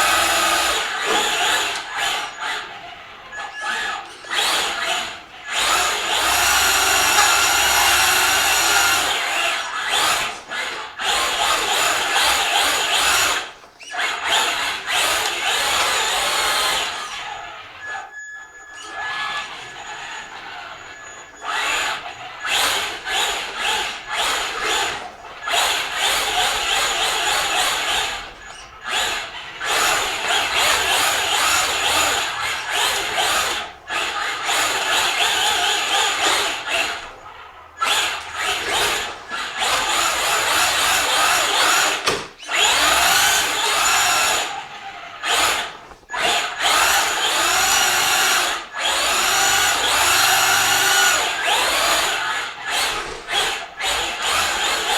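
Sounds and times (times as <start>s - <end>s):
toy truck motor whining: 0.0s - 54.9s.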